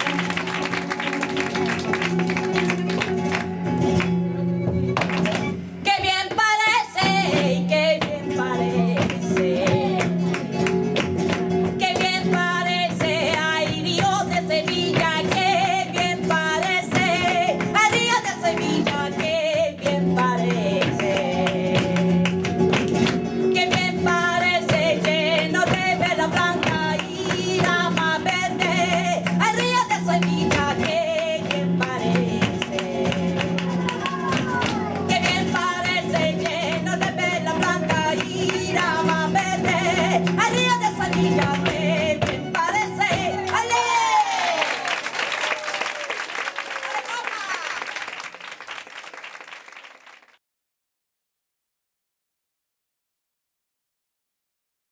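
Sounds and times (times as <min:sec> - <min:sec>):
flamenco guitar: 0:00.0 - 0:49.2
woman singing: 0:05.8 - 0:44.8.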